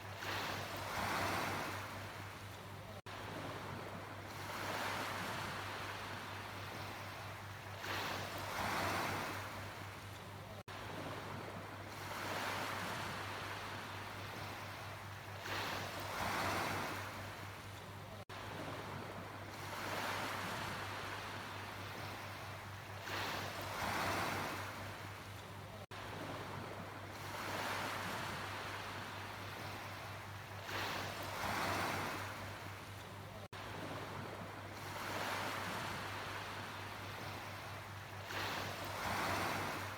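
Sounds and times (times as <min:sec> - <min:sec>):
sea waves breaking: 0:15.3 - 0:17.5, 0:18.4 - 0:39.9.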